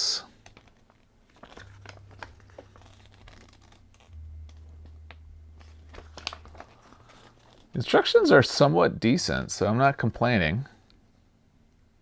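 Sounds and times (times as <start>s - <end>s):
paper rustling: 0.5s - 4.1s, 5.6s - 7.8s
steady low hum: 1.2s - 9.8s.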